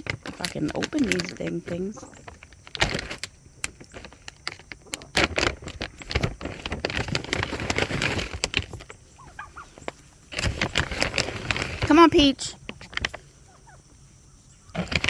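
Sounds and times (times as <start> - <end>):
treat package crinkling: 0.0 - 13.2.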